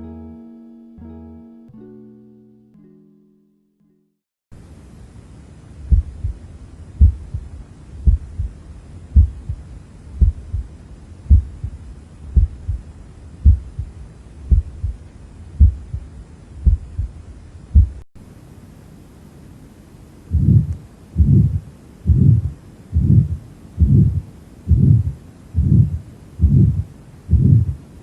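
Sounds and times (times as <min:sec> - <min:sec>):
faint steady hiss: 0:04.5 - 0:28.0
heartbeat thumps: 0:05.9 - 0:06.4, 0:07.0 - 0:15.0, 0:15.6 - 0:18.0, 0:20.3 - 0:27.8.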